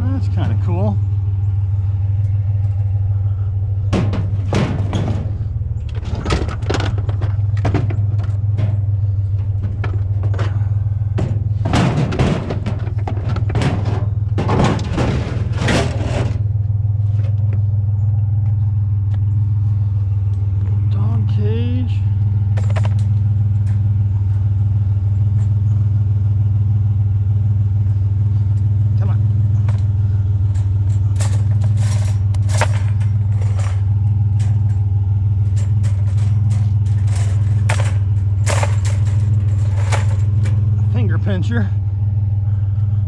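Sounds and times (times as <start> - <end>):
low hum: 0.0 - 43.0
vehicle engine idling: 0.0 - 43.0
scrap metal clanking: 2.2 - 17.4, 29.6 - 41.8.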